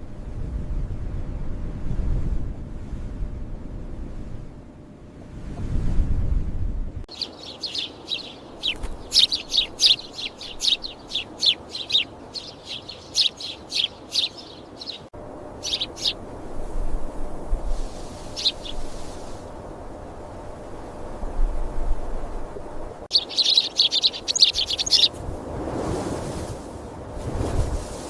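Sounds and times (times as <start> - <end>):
small birds chirping: 7.1 - 16.2, 17.8 - 19.4, 23.1 - 25.3.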